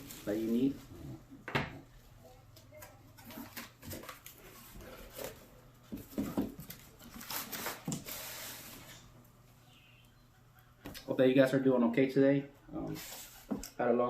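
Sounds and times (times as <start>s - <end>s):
packaging rustling: 3.1s - 8.9s.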